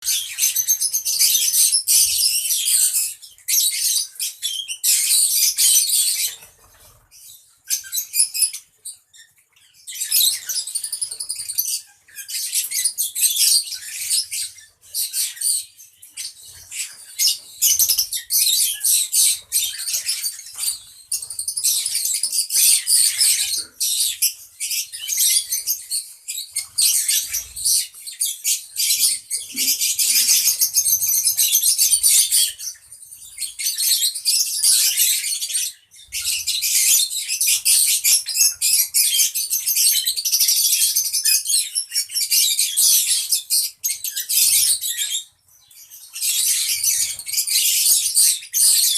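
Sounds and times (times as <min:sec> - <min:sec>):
lovebirds chattering: 0:00.0 - 0:48.9.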